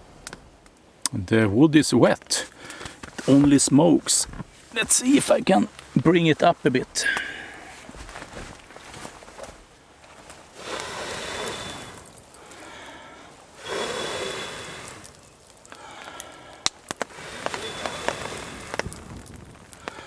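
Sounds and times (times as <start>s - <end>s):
fire crackling and popping: 0.0s - 20.0s
person blowing into fire: 6.9s - 7.9s, 10.5s - 20.0s.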